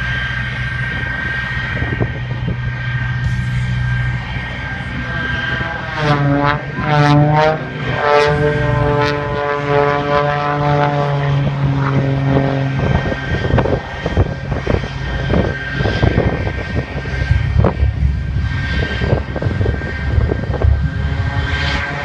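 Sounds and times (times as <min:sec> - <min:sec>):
propeller airplane engine droning: 0:00.0 - 0:22.0.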